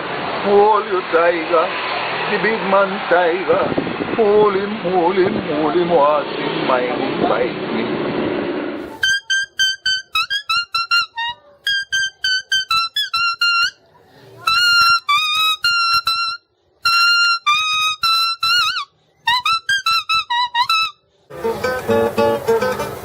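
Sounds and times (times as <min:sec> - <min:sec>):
high-pitched wind instrument melody: 0:08.8 - 0:23.0
strummed acoustic guitar: 0:21.3 - 0:23.0.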